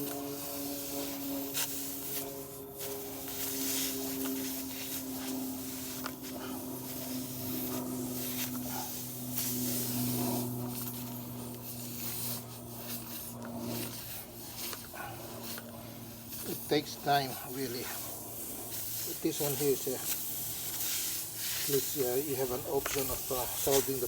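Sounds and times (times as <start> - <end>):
steady low hum: 0.0 - 24.0
metal tool rasping in tyre rubber: 0.8 - 24.0.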